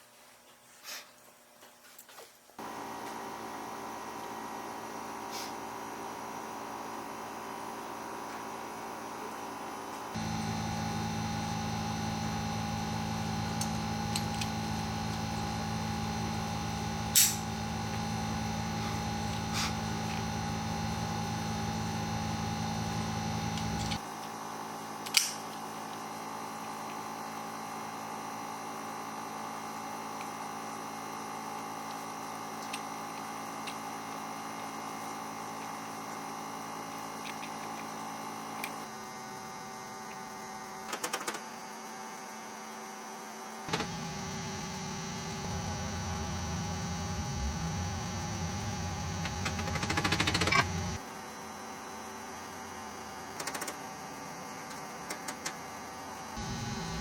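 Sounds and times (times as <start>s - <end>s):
electrical hum: 9.2s - 40.4s, 43.7s - 51.0s, 54.6s - 57.0s
low buzz: 10.2s - 24.0s, 43.7s - 51.0s, 56.4s - 57.0s.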